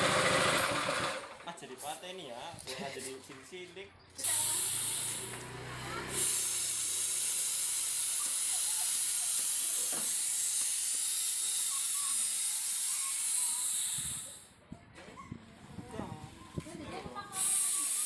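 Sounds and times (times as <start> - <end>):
loud hiss of air jet: 4.2 - 14.6, 17.3 - 18.0.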